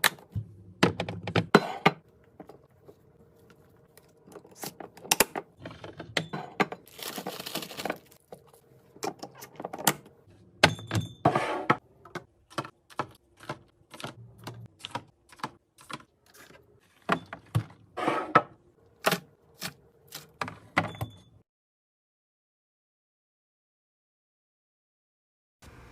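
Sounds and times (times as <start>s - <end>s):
packaging rustling: 6.9s - 8.5s.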